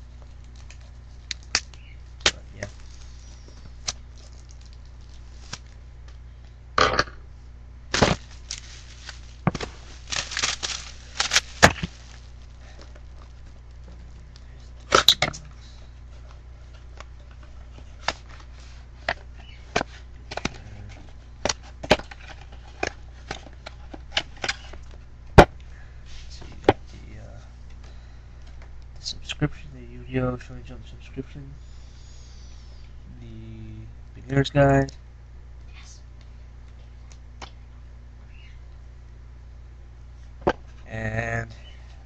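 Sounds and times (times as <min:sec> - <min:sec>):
packaging crinkling and tearing: 0:00.0 - 0:05.8, 0:07.9 - 0:14.4.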